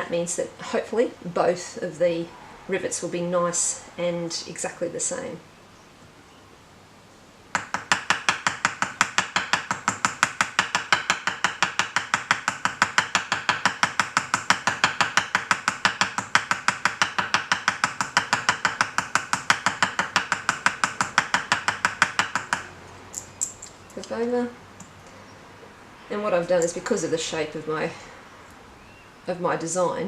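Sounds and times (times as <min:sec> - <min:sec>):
hammer tapping metal rivet: 0:07.5 - 0:24.2.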